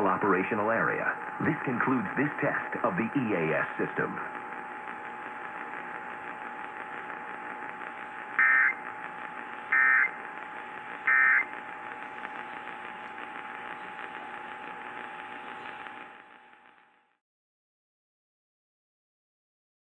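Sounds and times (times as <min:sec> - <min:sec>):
radio hiss: 0:00.0 - 0:17.2
data tone bursts: 0:08.2 - 0:16.2.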